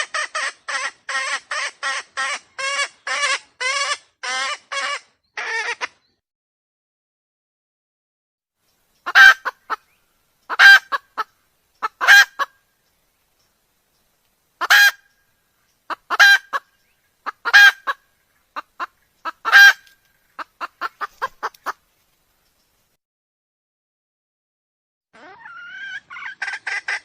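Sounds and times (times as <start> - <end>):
wild chicken calling: 0.0 - 6.2, 9.0 - 12.7, 14.6 - 21.9, 25.1 - 27.0
chicken clucking: 9.0 - 9.9, 10.5 - 12.5, 15.9 - 21.8, 25.2 - 27.0.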